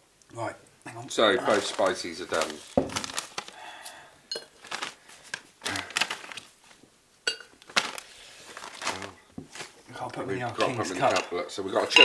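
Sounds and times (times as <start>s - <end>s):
tableware clinking and knocking: 7.3s - 7.6s, 10.6s - 12.0s.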